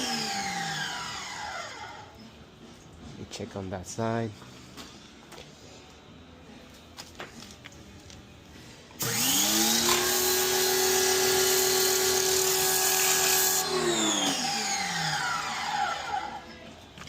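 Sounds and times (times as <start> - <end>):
power tool whining: 0.0 - 2.2, 9.0 - 16.5.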